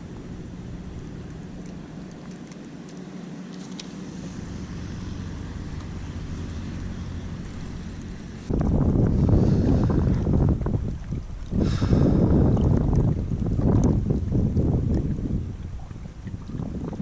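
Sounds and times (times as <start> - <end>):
distant city road traffic: 0.0 - 10.1.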